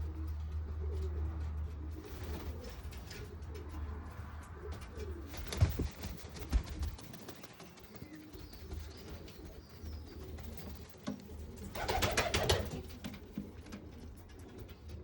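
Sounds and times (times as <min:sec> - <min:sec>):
pigeons cooing: 0:00.0 - 0:15.0.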